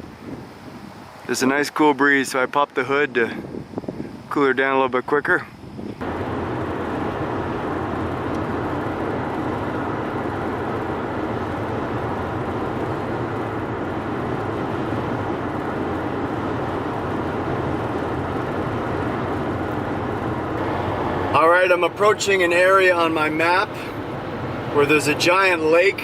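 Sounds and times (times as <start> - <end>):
van engine and road noise: 5.6 - 26.0.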